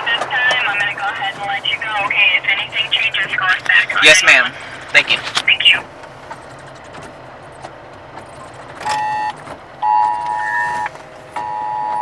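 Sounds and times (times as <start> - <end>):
vehicle cabin noise: 0.0 - 12.0.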